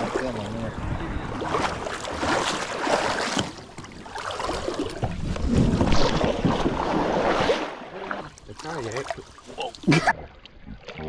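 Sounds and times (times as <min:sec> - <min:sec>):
creek water rushing and splashing: 0:00.0 - 0:11.0
kayak knocks and scrapes: 0:01.7 - 0:03.9, 0:04.5 - 0:07.6.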